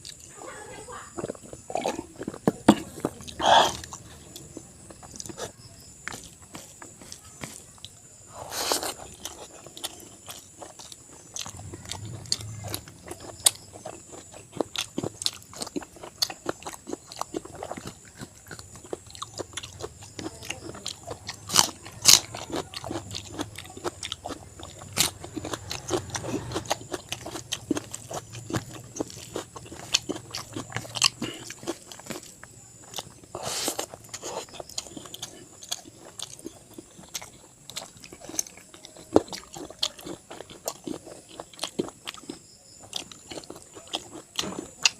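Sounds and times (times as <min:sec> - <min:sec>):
wet chewing and mouth smacks: 0:01.1 - 0:44.9.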